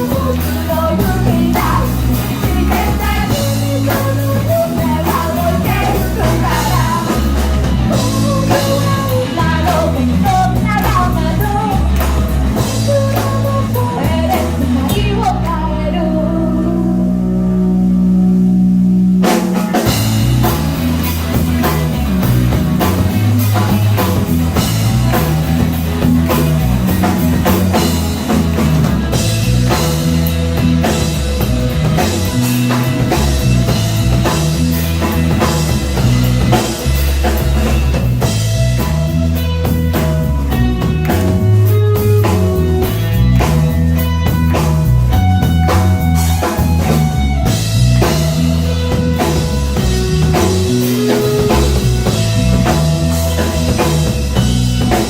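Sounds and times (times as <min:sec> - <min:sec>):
bass line: 0:00.0 - 0:55.0
busy drum kit: 0:00.0 - 0:55.0
guitar: 0:00.0 - 0:55.0.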